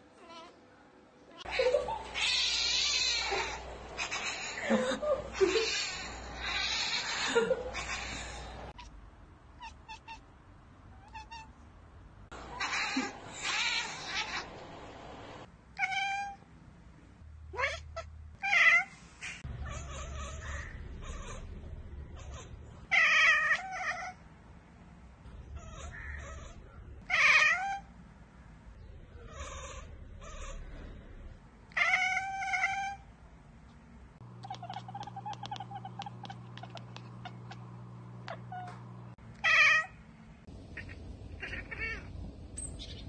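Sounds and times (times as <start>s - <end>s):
cat chattering: 2.0s - 4.7s, 12.4s - 14.6s, 19.6s - 24.2s, 34.4s - 37.7s, 40.7s - 42.1s.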